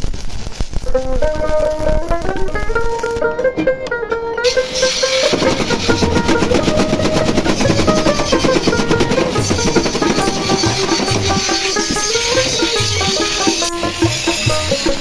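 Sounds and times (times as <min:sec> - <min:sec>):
fast dense drumming: 0:01.4 - 0:15.0
melody: 0:01.5 - 0:13.2.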